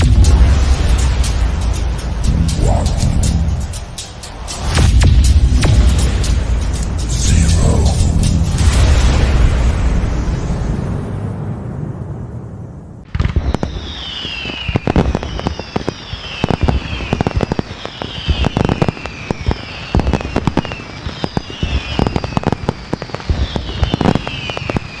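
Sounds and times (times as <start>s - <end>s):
fireworks bangs and crackles: 0.0s - 25.0s
fireworks falling whistles: 13.1s - 25.0s.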